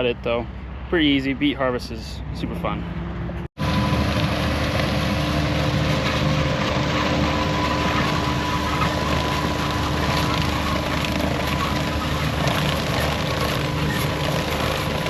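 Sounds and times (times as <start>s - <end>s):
diesel machinery engine rumble: 2.4s - 15.0s.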